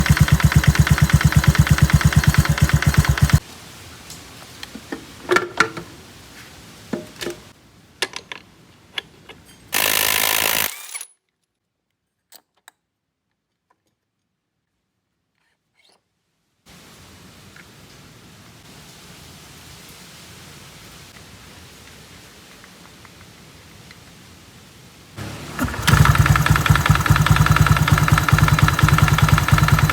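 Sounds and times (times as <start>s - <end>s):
scooter engine idling: 0.0s - 3.4s, 25.2s - 29.9s
loud hiss: 25.2s - 29.9s.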